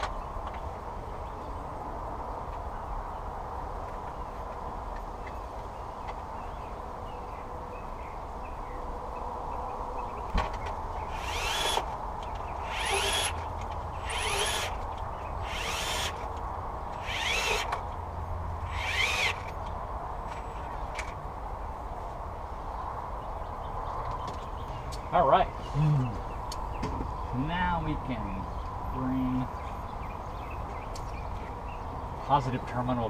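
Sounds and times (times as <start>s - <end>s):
power drill bursts: 11.1s - 11.9s, 12.6s - 13.4s, 14.0s - 14.8s, 15.4s - 16.2s, 17.0s - 17.8s, 18.7s - 19.5s.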